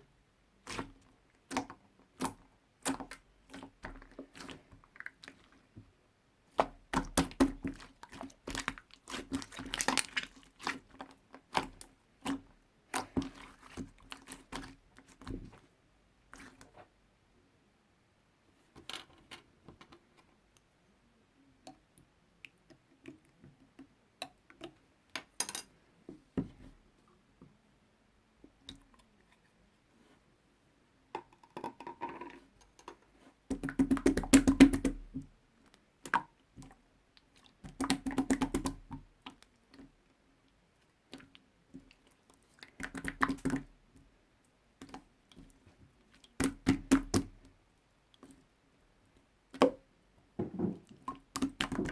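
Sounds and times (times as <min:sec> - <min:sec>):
slime crackling and squishing: 0:06.5 - 0:15.5.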